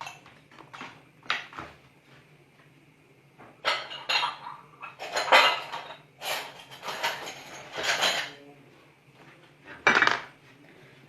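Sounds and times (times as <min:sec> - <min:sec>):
utensils clinking against dishes: 0:00.0 - 0:00.3, 0:03.6 - 0:08.4.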